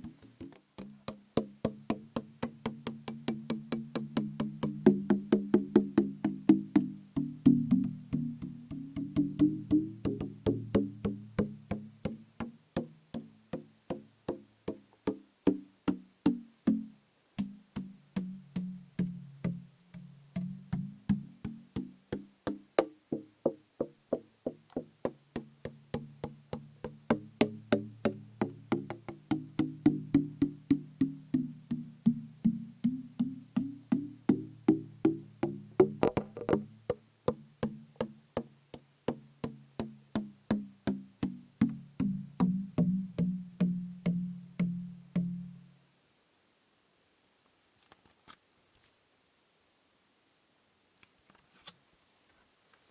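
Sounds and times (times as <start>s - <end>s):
fingers tapping plastic bottle: 0.0s - 45.4s.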